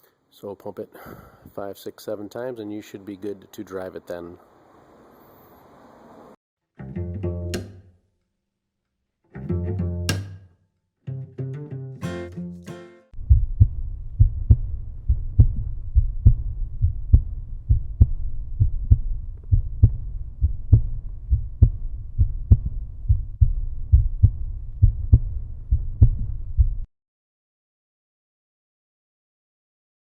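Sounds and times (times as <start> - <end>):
plucked and bowed string phrase: 6.8 - 7.9, 9.3 - 10.5, 11.1 - 13.1
low thumping beat: 12.0 - 26.9.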